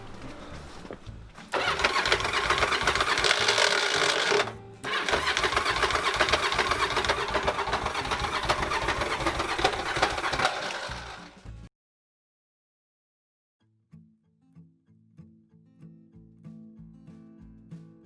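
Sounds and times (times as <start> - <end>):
motorcycle engine rough clatter: 1.4 - 11.4.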